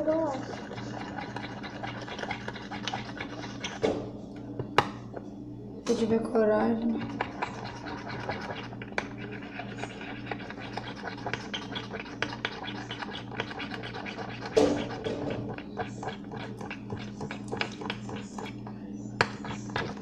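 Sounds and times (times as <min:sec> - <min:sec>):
utensil scraping against bowl: 0:00.0 - 0:03.8, 0:06.8 - 0:20.0.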